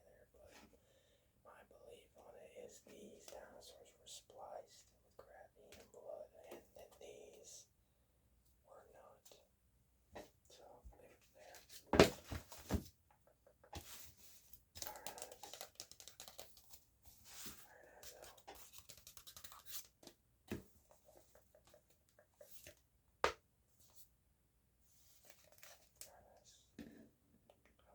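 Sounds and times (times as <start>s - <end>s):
paper rustling: 14.8s - 19.9s.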